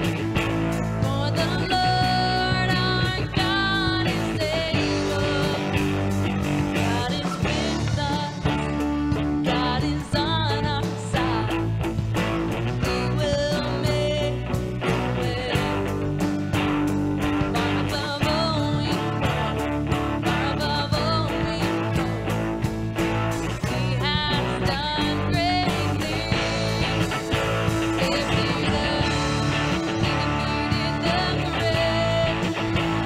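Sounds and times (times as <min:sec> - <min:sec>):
drums beat: 0:00.0 - 0:33.0
guitar: 0:00.0 - 0:33.0
voices singing: 0:23.3 - 0:33.0.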